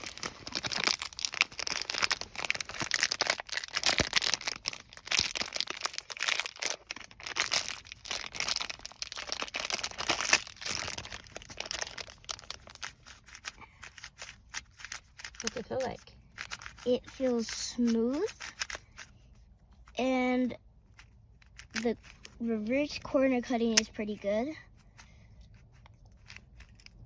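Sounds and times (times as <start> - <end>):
plastic packaging crinkling: 0.0 - 19.2.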